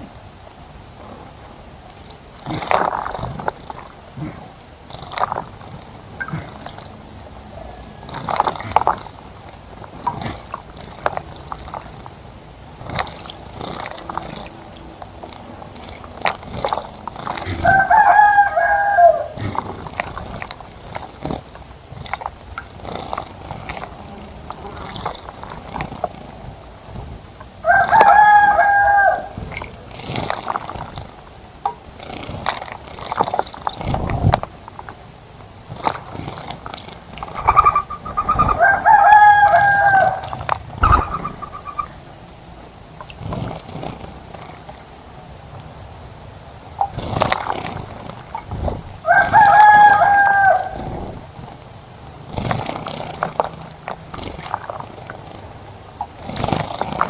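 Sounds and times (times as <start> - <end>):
rooster crowing: 7.5 - 8.6, 17.4 - 19.6, 27.6 - 29.6, 37.4 - 42.0, 49.0 - 51.0
short chirps and ticks: 37.4 - 38.6, 40.8 - 42.0.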